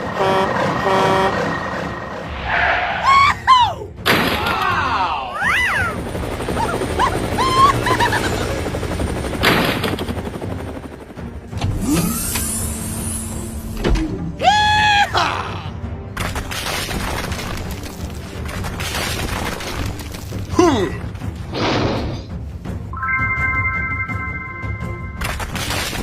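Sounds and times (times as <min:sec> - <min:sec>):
background music: 0:00.0 - 0:26.0.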